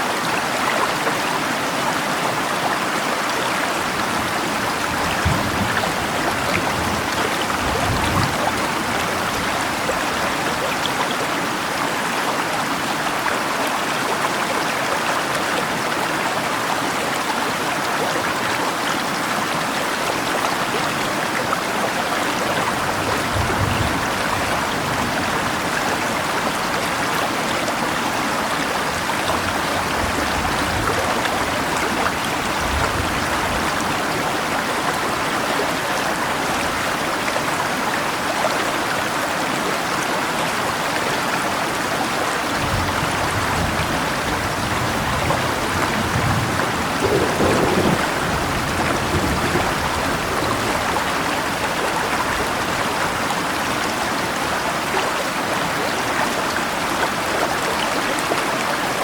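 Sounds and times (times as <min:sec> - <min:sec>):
river rushing: 0:00.0 - 0:59.0
rain falling: 0:00.1 - 0:59.0
distant thunder rumbling: 0:42.7 - 0:51.2.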